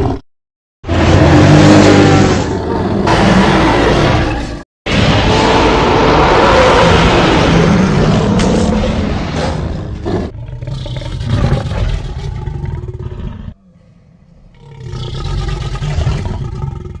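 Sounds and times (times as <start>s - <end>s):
loud harsh dinosaur roar: 0.8s - 17.0s
growling dinosaur roar: 0.9s - 17.0s.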